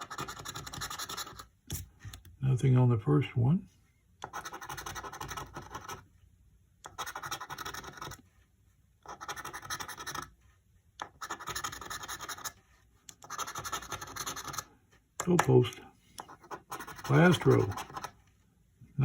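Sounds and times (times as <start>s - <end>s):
lottery ticket being scratched: 0.0s - 1.5s, 4.2s - 6.0s, 6.9s - 8.2s, 9.0s - 10.3s, 11.0s - 12.6s, 13.2s - 18.2s.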